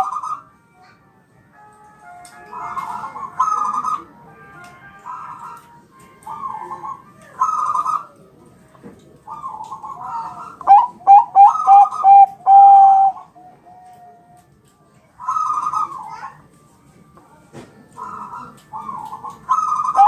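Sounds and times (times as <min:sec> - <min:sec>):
dove cooing: 0:00.0 - 0:00.4, 0:02.6 - 0:04.2, 0:06.2 - 0:08.2, 0:09.3 - 0:14.2, 0:15.2 - 0:16.4, 0:18.0 - 0:20.0.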